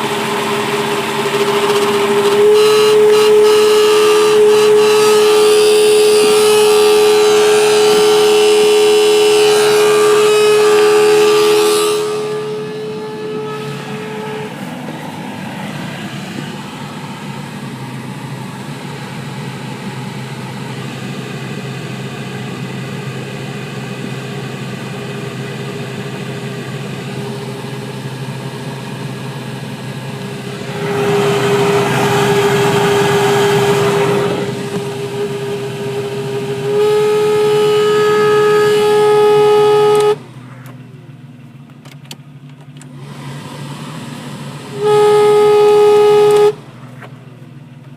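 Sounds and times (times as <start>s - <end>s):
horn-like droning tone: 0.0s - 40.4s, 44.7s - 46.8s
engine running: 0.0s - 47.9s
loud rush of noise: 10.0s - 36.6s.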